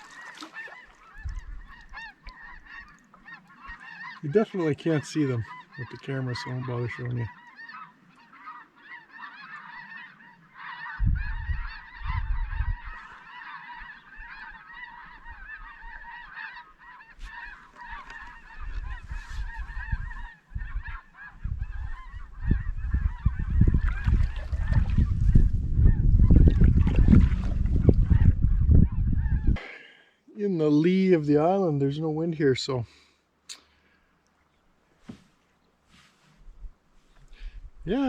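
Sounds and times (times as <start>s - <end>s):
distant geese calling: 0.0s - 30.3s, 30.9s - 38.0s
wind rumbling on microphone: 1.1s - 2.8s, 11.0s - 13.2s, 17.2s - 29.6s, 36.4s - 38.0s.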